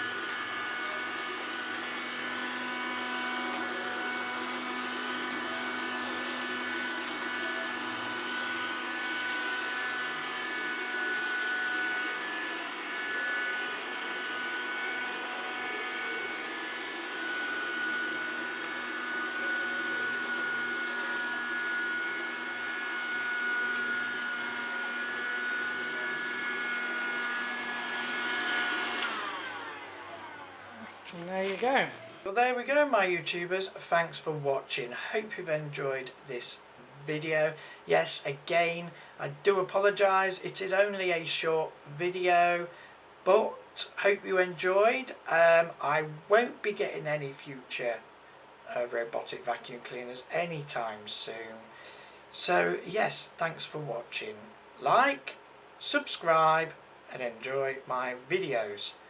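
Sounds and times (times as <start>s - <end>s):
robotic vacuum cleaner running: 0.0s - 33.0s.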